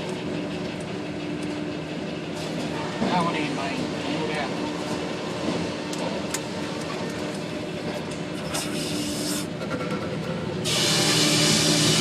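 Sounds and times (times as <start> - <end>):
sawmill machinery humming: 10.6 - 12.0.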